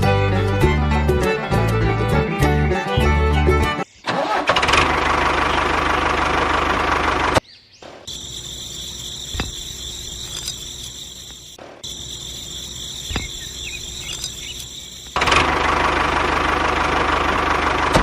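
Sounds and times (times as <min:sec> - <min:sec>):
bluegrass music: 0:00.0 - 0:03.8
small engine running: 0:04.5 - 0:07.4, 0:08.2 - 0:11.3, 0:12.0 - 0:18.0
crickets chirring: 0:07.9 - 0:16.2.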